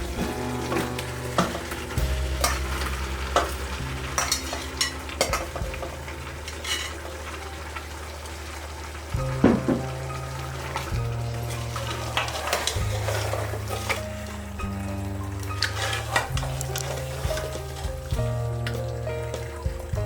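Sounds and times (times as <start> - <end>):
spoon scraping and knocking a pan: 0.0 - 7.4, 9.2 - 10.0, 10.8 - 14.2
food sizzling in a pan: 0.0 - 20.0.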